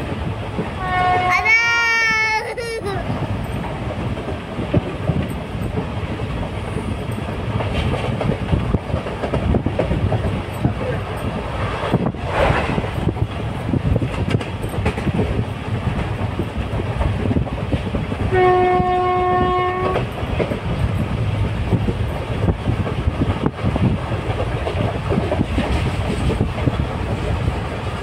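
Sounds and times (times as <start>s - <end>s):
train rumbling on rails: 0.0s - 28.0s
train horn blast: 0.8s - 1.7s, 18.3s - 20.1s
wheels clattering over rail joints: 3.1s - 18.3s.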